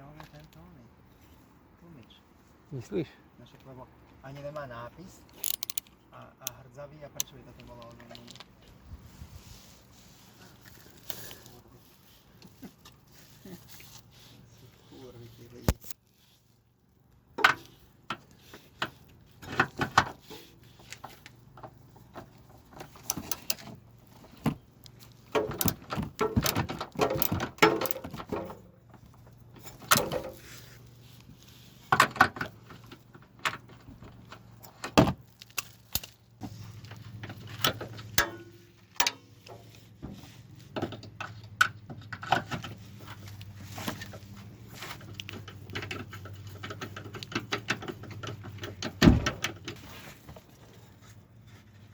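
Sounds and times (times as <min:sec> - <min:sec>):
metal tools clinking and rattling: 0:37.4 - 0:39.5.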